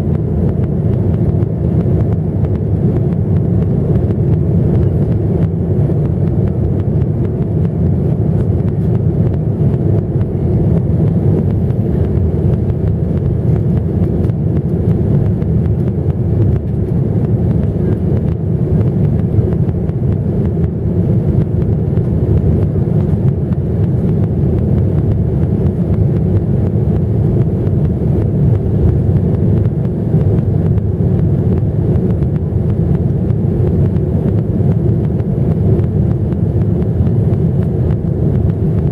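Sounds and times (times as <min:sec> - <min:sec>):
jet engines rumbling: 0:00.0 - 0:38.9.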